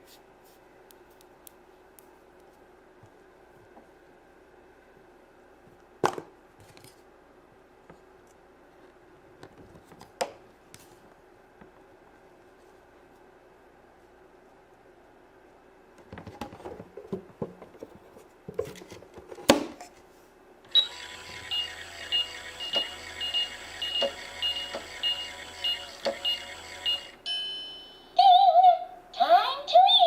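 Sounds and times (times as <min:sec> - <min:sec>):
toy oven electronic tone: 0:20.7 - 0:28.4.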